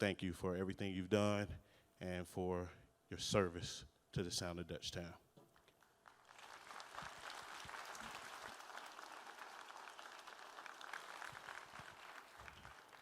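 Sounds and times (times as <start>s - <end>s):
audience applauding: 5.8s - 13.0s.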